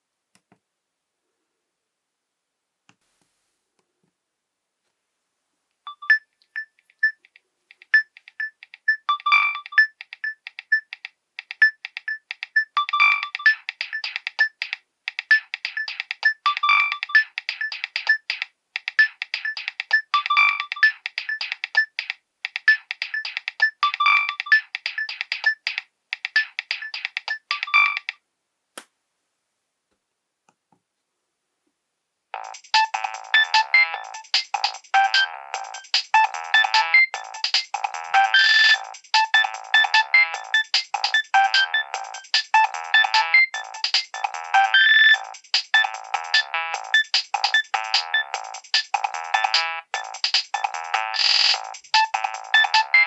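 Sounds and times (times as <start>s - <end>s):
polyphonic ringtone melody: 12.8s - 14.6s, 15.3s - 18.2s, 19.0s - 22.0s, 22.6s - 25.7s, 32.4s - 53.0s.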